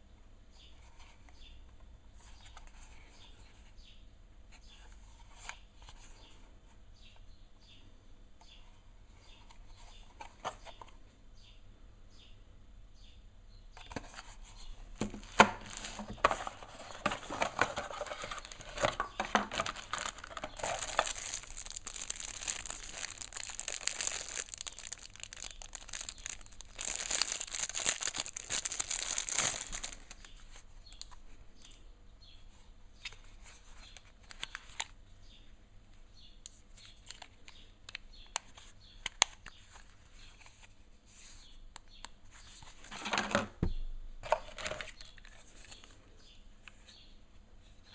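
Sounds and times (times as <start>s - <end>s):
packaging crinkling and rustling: 14.9s - 31.2s.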